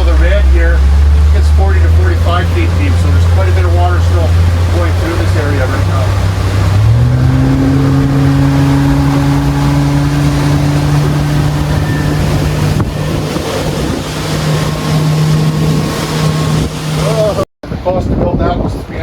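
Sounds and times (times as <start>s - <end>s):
boat engine running: 0.0s - 17.5s
wind on microphone: 0.0s - 19.0s.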